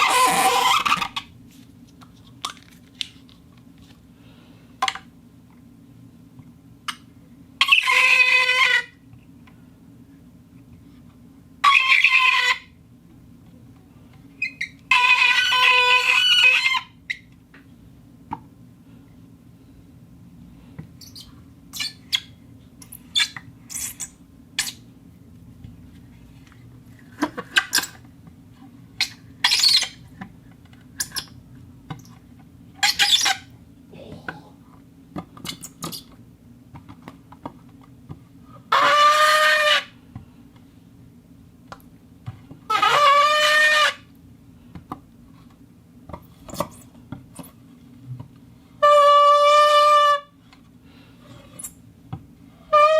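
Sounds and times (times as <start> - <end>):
friction squeaks: 0.0 - 1.2.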